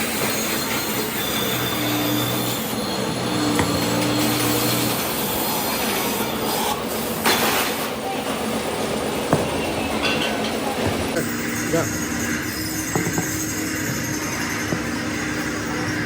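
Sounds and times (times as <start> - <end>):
workshop machinery noise: 0.0 - 16.0
low machine hum: 8.2 - 16.0.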